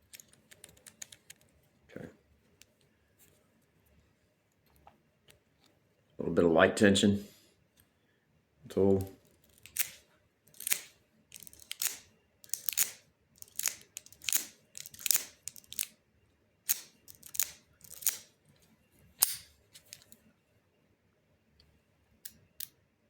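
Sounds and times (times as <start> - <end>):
lock pick scraping padlock pins: 9.4 - 15.9, 16.7 - 18.3.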